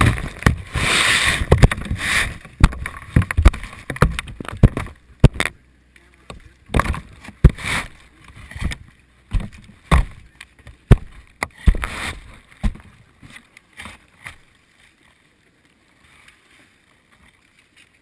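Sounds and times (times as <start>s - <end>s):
tray knocks and rustles: 1.4s - 5.5s.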